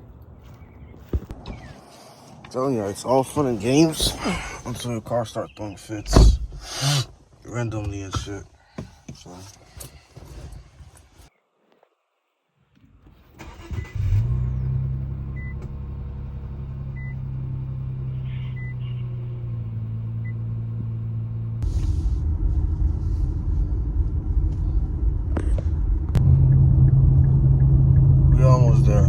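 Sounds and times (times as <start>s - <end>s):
car engine starting and running: 3.2s - 8.4s, 12.8s - 29.0s
dashboard warning chime beeping: 17.0s - 17.2s, 18.4s - 18.9s.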